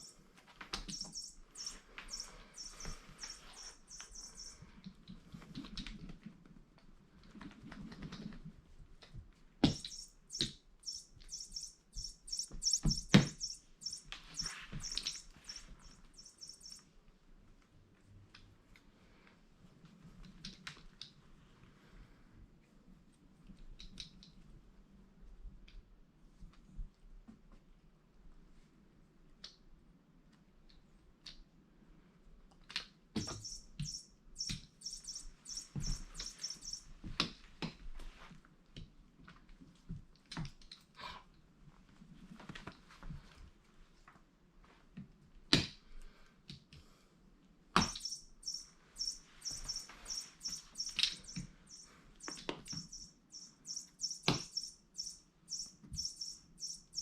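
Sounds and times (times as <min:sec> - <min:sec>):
electronic toy chirping: 0:00.9 - 0:04.6, 0:09.7 - 0:16.8, 0:33.2 - 0:36.9, 0:47.8 - 0:57.0.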